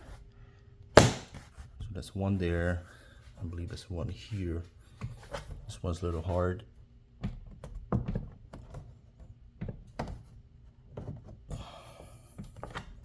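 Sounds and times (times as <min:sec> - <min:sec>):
plastic clips knocked by hand: 0:01.0 - 0:01.4.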